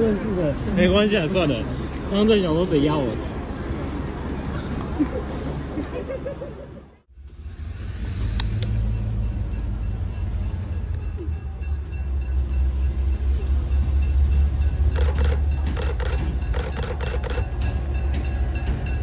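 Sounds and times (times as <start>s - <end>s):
diesel locomotive rumble: 3.1s - 19.0s
camera shutter clicks: 15.0s - 17.4s.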